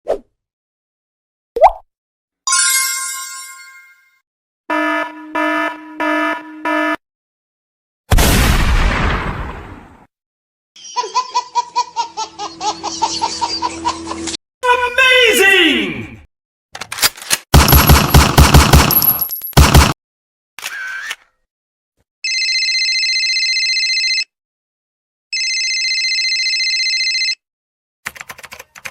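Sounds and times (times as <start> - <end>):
electronic buzzer: 4.7 - 7.0
automatic gunfire: 17.5 - 20.0
trilling telephone ringtone: 22.2 - 24.3, 25.4 - 27.4.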